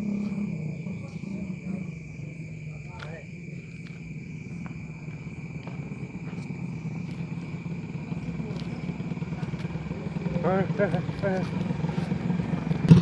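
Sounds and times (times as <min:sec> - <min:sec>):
high insect drone: 0:00.0 - 0:13.0
small engine throbbing: 0:05.8 - 0:13.0.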